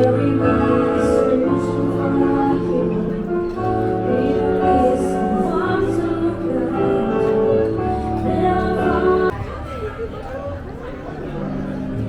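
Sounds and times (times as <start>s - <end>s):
music with singing: 0.0s - 9.6s.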